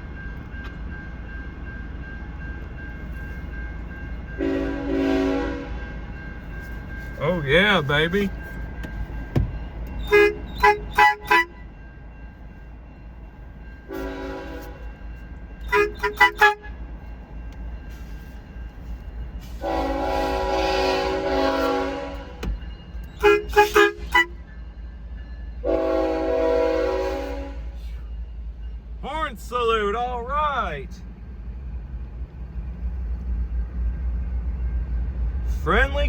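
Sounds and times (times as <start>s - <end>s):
locomotive air horn chord: 4.4s - 5.8s, 10.1s - 11.7s, 13.9s - 14.8s, 15.7s - 16.8s, 19.4s - 22.4s, 23.2s - 24.4s, 25.6s - 28.0s
car horn tooting: 10.1s - 11.6s, 15.7s - 16.7s, 23.2s - 24.4s.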